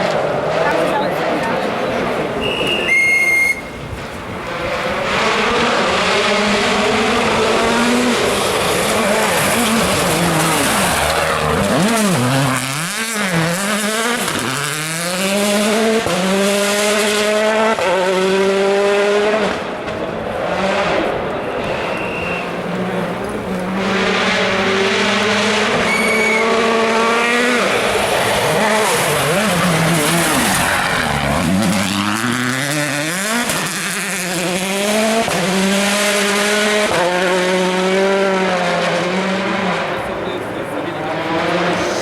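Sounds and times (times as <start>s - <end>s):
rally car engine revving: 0.0s - 2.5s, 3.8s - 42.0s
tyre noise: 2.2s - 15.5s.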